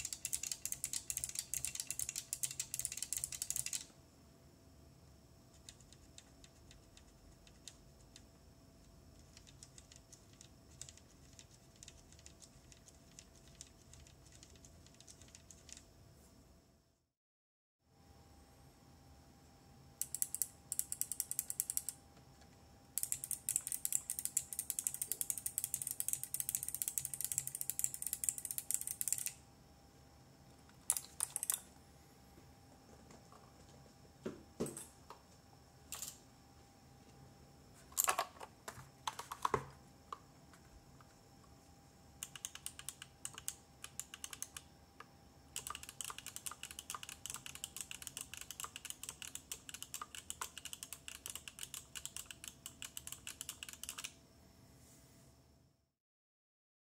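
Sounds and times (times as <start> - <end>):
mechanical keyboard clicks: 0.0 - 3.9, 9.2 - 15.8, 20.0 - 22.0, 23.0 - 29.4, 30.9 - 31.7, 39.1 - 39.5, 42.2 - 44.7, 45.6 - 54.2.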